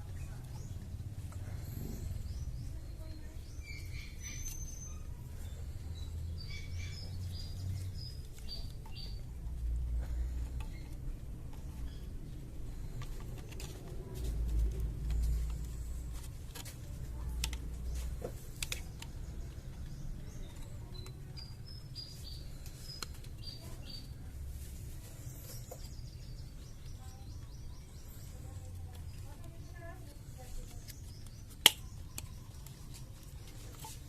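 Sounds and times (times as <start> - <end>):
low rumble: 0.8 - 3.0
sharp clicks and taps: 16.5 - 21.5, 31.0 - 32.9.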